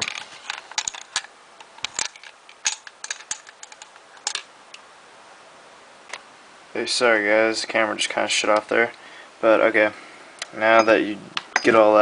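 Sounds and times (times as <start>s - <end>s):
plastic parts clicking and tapping: 0.0s - 4.5s.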